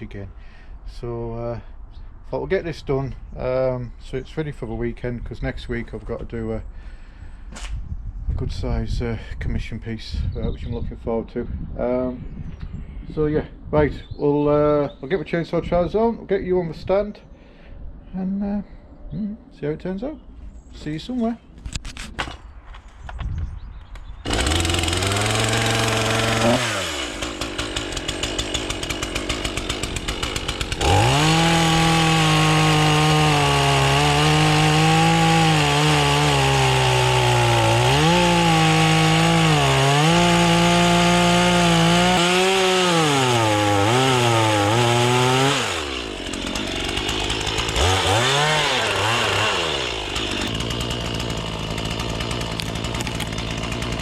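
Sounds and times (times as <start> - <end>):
chainsaw cutting wood: 24.2 - 54.0
chainsaw idling and revving: 24.2 - 54.0.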